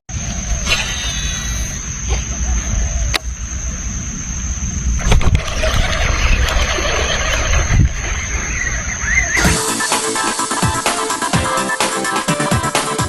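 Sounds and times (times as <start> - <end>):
high-pitched whine: 0.1 - 13.0
low boat rumble: 0.3 - 9.5
water noise: 3.7 - 10.6.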